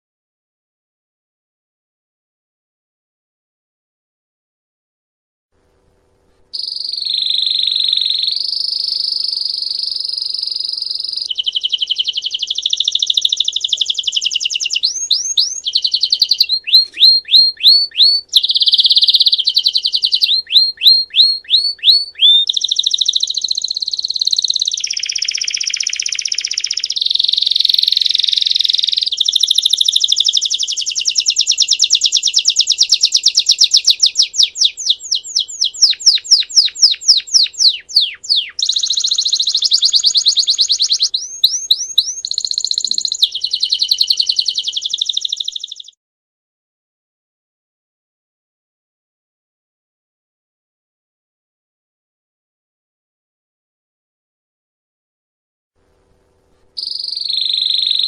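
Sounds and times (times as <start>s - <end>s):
canary singing trills: 6.5s - 46.0s, 56.8s - 58.0s.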